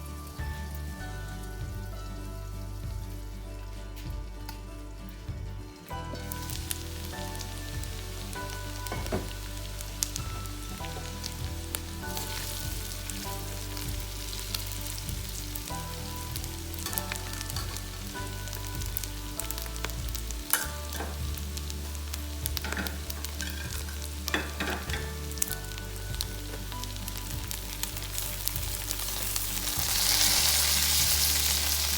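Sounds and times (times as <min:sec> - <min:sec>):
food sizzling in a pan: 0:05.9 - 0:31.9.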